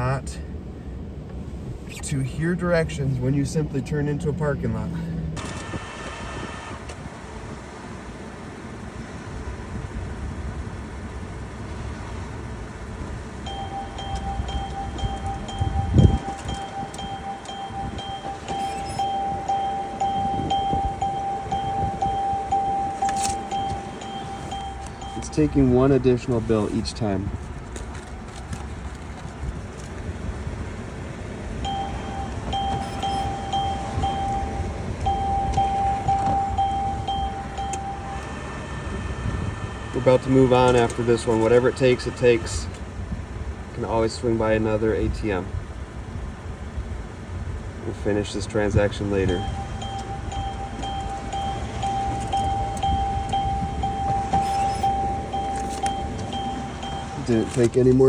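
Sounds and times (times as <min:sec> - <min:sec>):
car engine idling: 0:00.0 - 0:58.0
short high beeps: 0:13.5 - 0:25.7, 0:31.6 - 0:38.4, 0:49.2 - 0:57.6.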